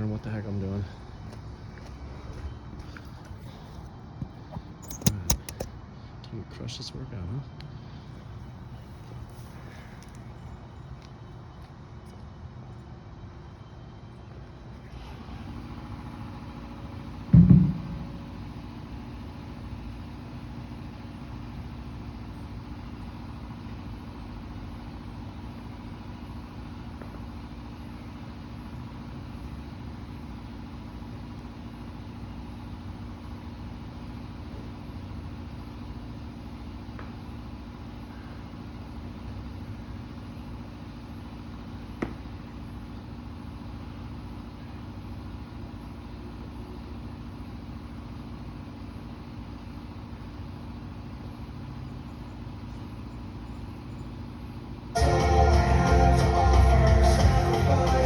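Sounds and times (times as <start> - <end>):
mechanical hum: 0.0 - 58.0
small click: 4.8 - 5.7
heavy thud: 17.3 - 18.5.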